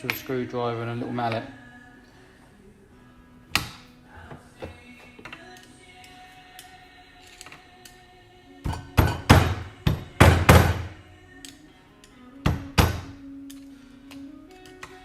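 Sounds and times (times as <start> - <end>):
faint background music: 0.0 - 15.0
mallet striking a screwdriver: 8.7 - 10.9.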